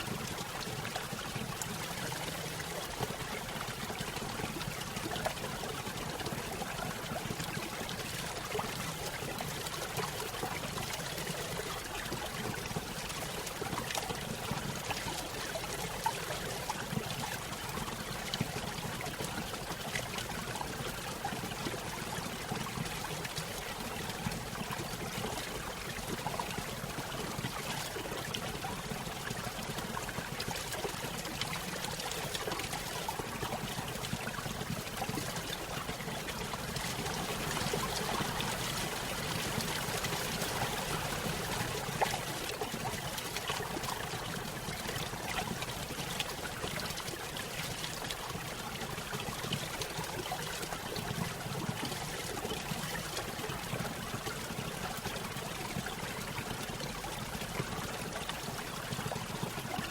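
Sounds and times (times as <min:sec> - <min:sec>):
stream trickling and splashing: 0:00.0 - 0:59.9.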